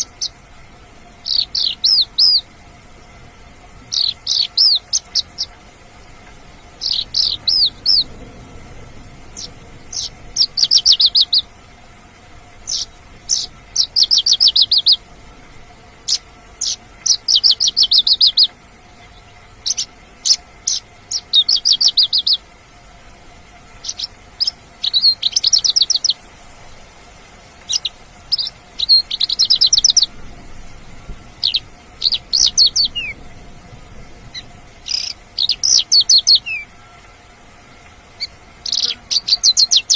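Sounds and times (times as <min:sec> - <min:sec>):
lark singing high trills: 0:00.0 - 0:00.4, 0:01.2 - 0:02.5, 0:03.9 - 0:05.6, 0:06.6 - 0:08.1, 0:09.2 - 0:11.6, 0:12.6 - 0:15.1, 0:16.0 - 0:22.5, 0:23.8 - 0:26.3, 0:27.6 - 0:30.3, 0:31.3 - 0:33.3, 0:34.3 - 0:37.1, 0:38.2 - 0:39.9.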